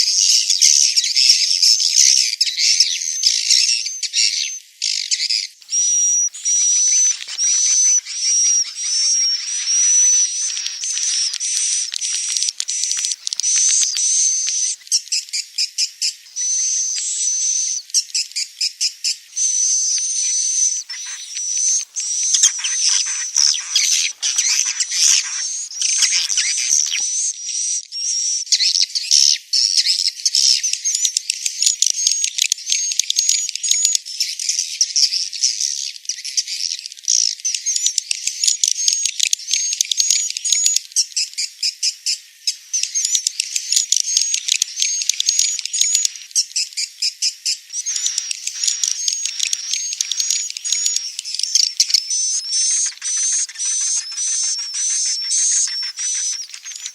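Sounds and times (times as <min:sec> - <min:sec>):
high-pitched bird chirping: 0:05.6 - 0:18.5, 0:19.4 - 0:27.3, 0:42.8 - 0:46.9, 0:47.7 - 0:56.9
thin steady whistle tone: 0:05.6 - 0:27.4, 0:41.6 - 0:56.9.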